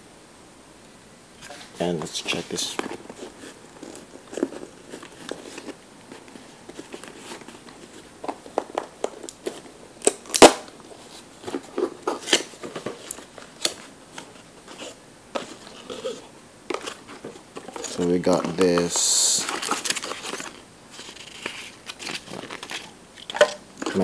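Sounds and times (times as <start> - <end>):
paper packaging rustling: 1.4 - 24.0.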